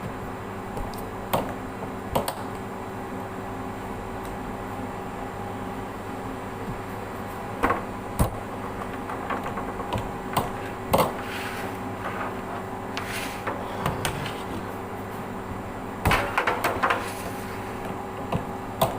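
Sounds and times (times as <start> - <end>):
steady electrical hum: 0.0 - 18.9
objects knocking and clicking: 7.6 - 11.2.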